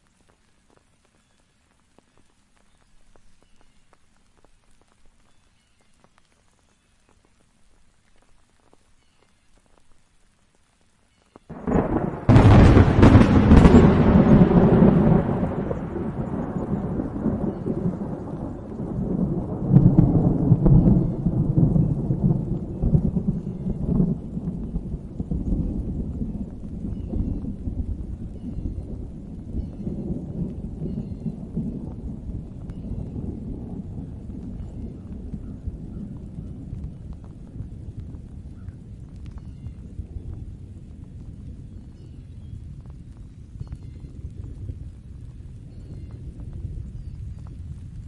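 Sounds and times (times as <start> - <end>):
faint rain patter: 0.0 - 48.0
low thunder rumble: 11.5 - 48.0
thunderclap cracking: 11.5 - 48.0.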